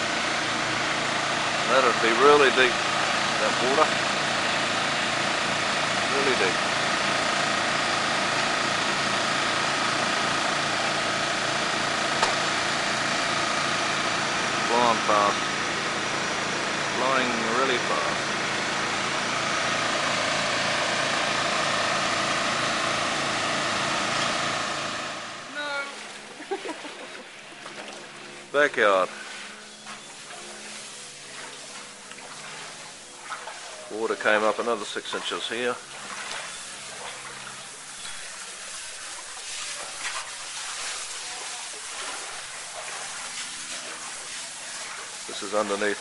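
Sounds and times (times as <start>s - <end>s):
engine drone with whine: 0.0s - 46.0s
water hissing: 28.8s - 46.0s.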